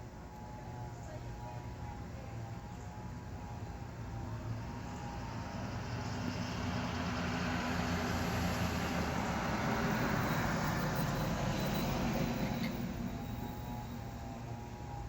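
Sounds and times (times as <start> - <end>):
car passing: 3.6 - 15.0.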